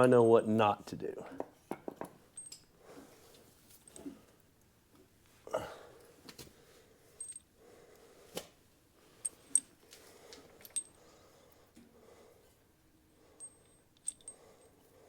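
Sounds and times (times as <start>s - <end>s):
metallic clinks and taps: 1.3s - 2.7s, 7.2s - 7.5s, 9.2s - 9.8s, 10.4s - 11.0s, 13.2s - 14.8s.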